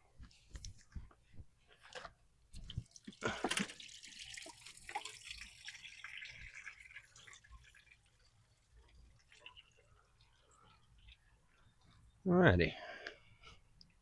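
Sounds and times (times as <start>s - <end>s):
liquid trickling and splashing: 2.5s - 12.2s.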